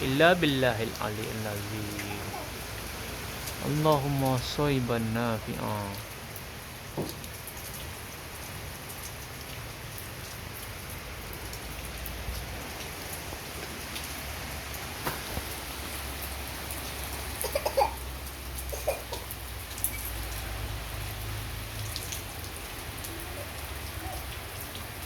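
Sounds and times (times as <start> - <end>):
steady rain: 0.0 - 25.0.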